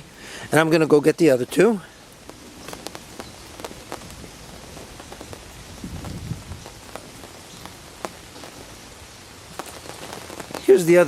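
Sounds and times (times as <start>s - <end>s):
steady rain falling: 0.0s - 11.0s
single raindrops ticking: 0.9s - 11.0s.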